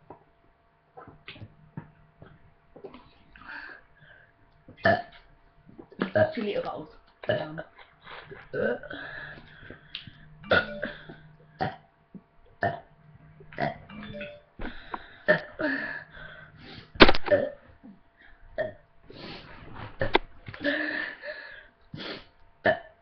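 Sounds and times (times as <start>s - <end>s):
girl burping: 4.8s - 5.1s, 8.5s - 9.0s, 10.4s - 11.8s, 15.3s - 15.7s, 17.2s - 17.6s.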